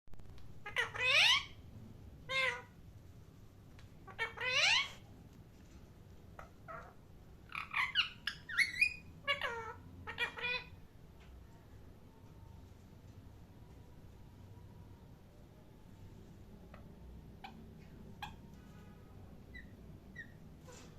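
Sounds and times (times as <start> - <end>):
parrot chirping: 0.6 - 1.6, 2.2 - 2.8, 4.0 - 5.0, 6.4 - 10.8, 16.7 - 18.6, 19.4 - 20.4
parrot squawking: 0.6 - 1.6, 2.2 - 2.8, 4.0 - 5.0, 6.4 - 10.8, 16.7 - 18.6, 19.5 - 20.4.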